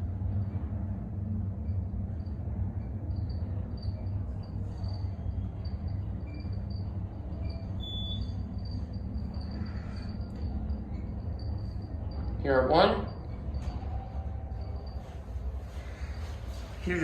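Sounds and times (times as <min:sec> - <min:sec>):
elevator hum and rumble: 0:00.0 - 0:17.0
faint high chirps: 0:02.8 - 0:16.4.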